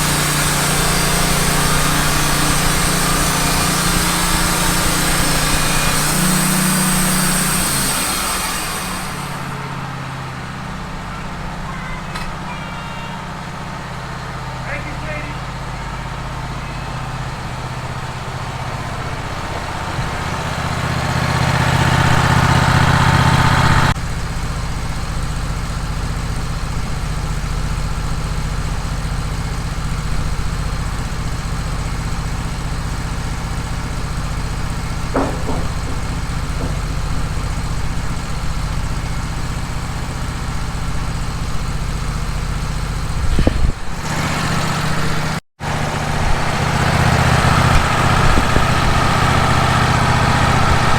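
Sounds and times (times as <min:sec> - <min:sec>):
sawmill engine running: 0:00.0 - 0:50.9
faint knocks: 0:35.2 - 0:37.7.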